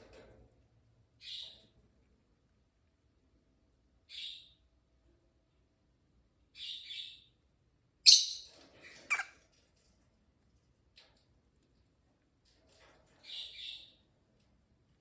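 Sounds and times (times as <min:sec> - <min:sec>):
bird chirp dropping in pitch: 0:08.1 - 0:08.5.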